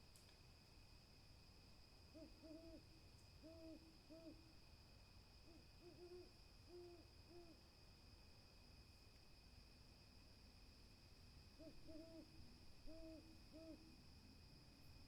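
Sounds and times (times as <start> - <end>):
owl hooting: 2.1 - 2.8, 3.4 - 4.4, 5.5 - 7.6, 11.6 - 13.9.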